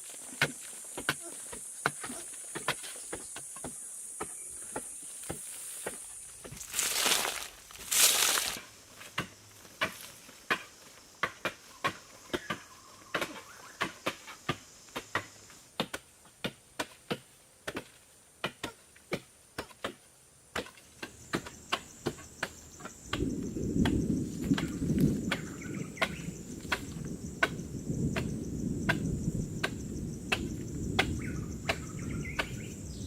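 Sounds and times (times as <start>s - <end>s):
loud rustling: 6.6s - 8.6s.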